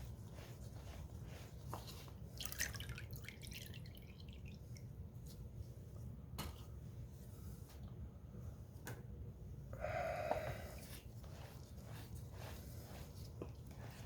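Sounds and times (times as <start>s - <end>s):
liquid dripping and splashing: 2.4s - 4.8s.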